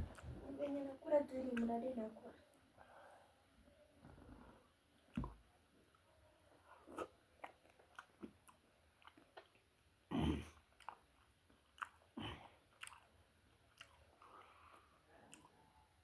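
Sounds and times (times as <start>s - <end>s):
person chewing food: 0.0s - 0.4s, 5.0s - 16.0s.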